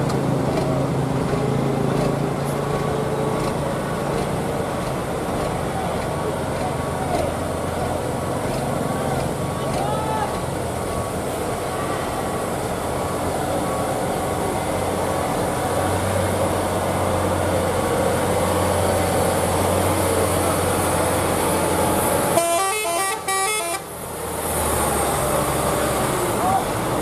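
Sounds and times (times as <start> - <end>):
heavy truck engine: 0.0 - 27.0
multi-tone musical horn: 22.3 - 23.9.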